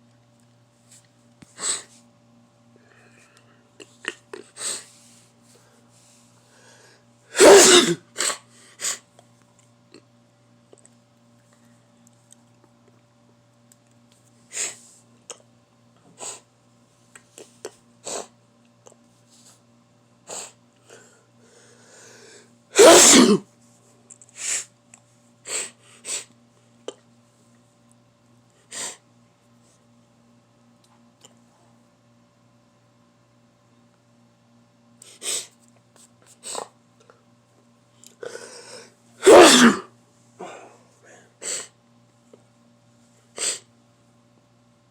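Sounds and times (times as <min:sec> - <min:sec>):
faint steady hum: 0:00.0 - 0:44.9
person sneezing: 0:07.3 - 0:09.0, 0:22.7 - 0:23.5, 0:38.2 - 0:41.7.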